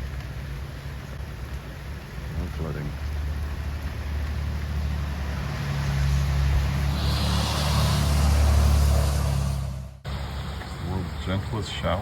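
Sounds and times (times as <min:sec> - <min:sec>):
vehicle engine humming: 0:00.0 - 0:12.0
rushing noise: 0:05.3 - 0:10.5.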